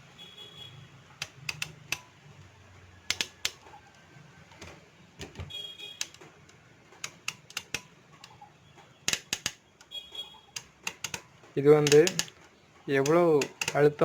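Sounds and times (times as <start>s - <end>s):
typewriter keys clacking: 10.6s - 12.3s.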